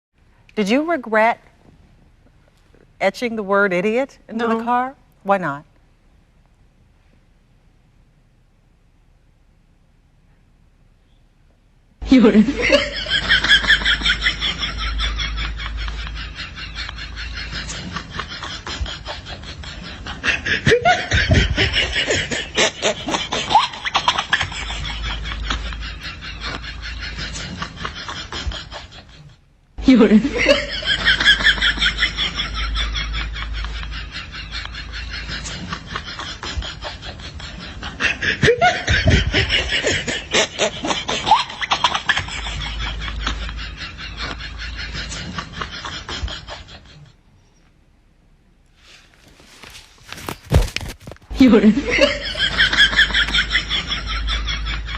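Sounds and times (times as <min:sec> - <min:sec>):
pulsing laughter with swooping pitch: 0:12.0 - 0:47.2, 0:51.3 - 0:54.9
person laughing in rapid pulses: 0:15.7 - 0:29.4.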